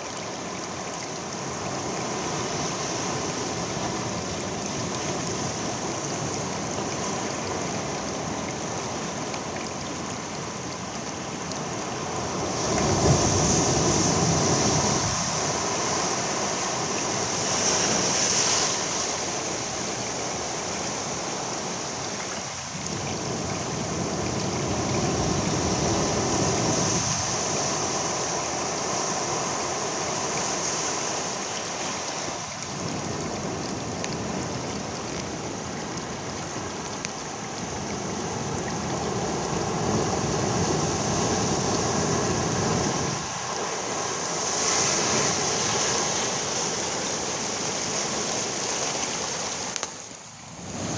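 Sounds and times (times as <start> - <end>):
waves breaking on rocky shore: 10.7 - 50.9
steady high hiss: 13.2 - 50.9.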